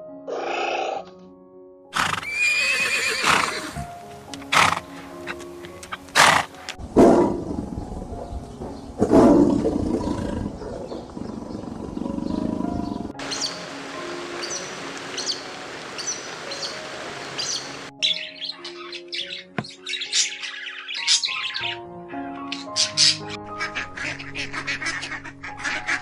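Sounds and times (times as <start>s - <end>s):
background music: 0.0s - 26.0s
horse neighing: 0.3s - 1.0s, 1.9s - 3.9s, 4.5s - 4.9s, 6.2s - 6.5s.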